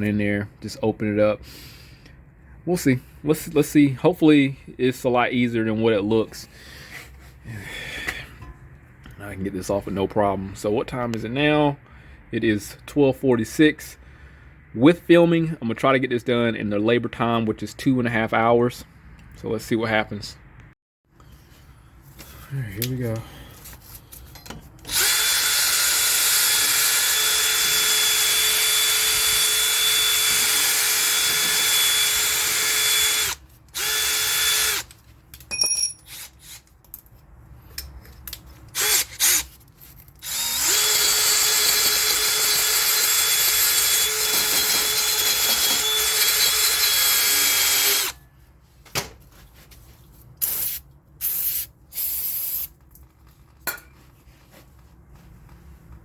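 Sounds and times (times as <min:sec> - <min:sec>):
electric power tool whining: 0:40.2 - 0:48.2.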